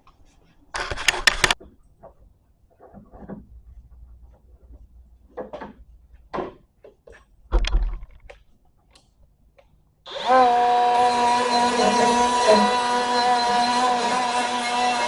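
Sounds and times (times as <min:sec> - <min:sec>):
handling knocks and clatters: 0:00.8 - 0:08.6
die grinder whining: 0:10.1 - 0:15.0.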